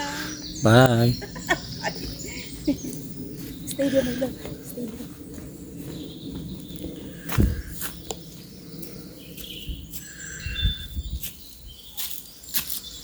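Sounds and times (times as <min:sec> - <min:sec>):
birds chirping: 0:00.0 - 0:13.0
loud thump: 0:07.3 - 0:07.7.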